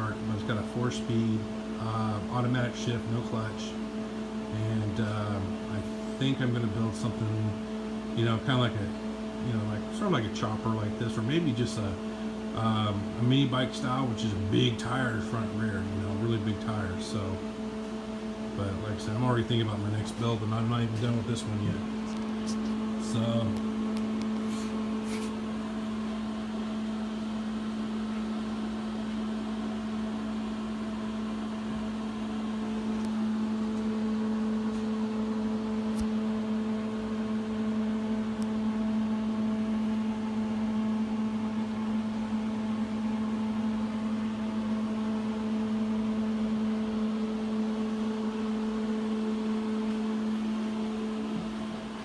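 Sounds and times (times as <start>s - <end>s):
low mechanical hum: 0.0s - 52.0s.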